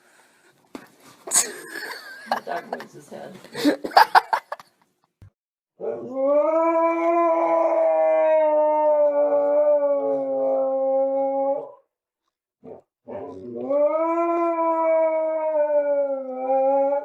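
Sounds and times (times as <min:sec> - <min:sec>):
dog howling: 0:05.8 - 0:11.8, 0:12.7 - 0:17.0.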